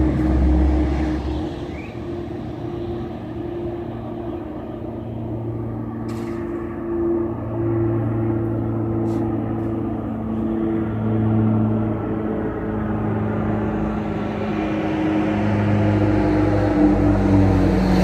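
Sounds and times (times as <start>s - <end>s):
propeller airplane drone: 0.0s - 18.0s.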